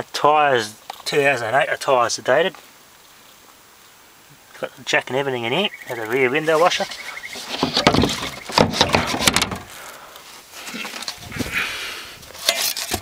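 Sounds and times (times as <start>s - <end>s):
objects knocking and rattling: 6.9s - 9.8s.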